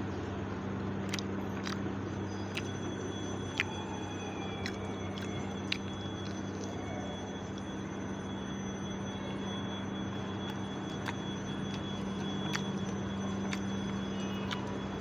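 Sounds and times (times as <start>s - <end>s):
machine hum: 0.0s - 15.0s.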